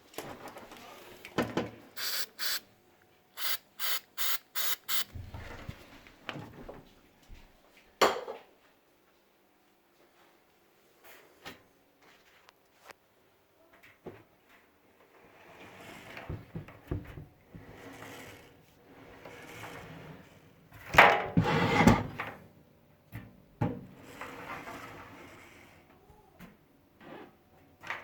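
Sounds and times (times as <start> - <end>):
sliding scraping noise: 17.6 - 20.4, 21.4 - 22.0.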